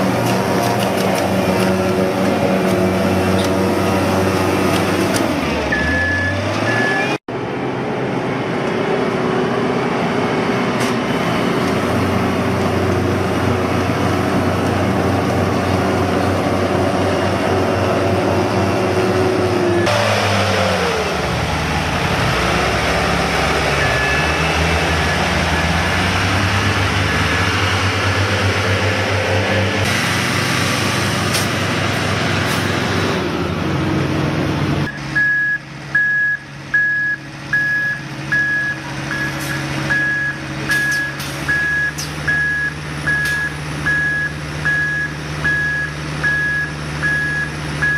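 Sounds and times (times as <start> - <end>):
construction machinery engine drone: 0.0 - 47.9
faint reversing beeps: 23.8 - 24.4, 35.2 - 47.9.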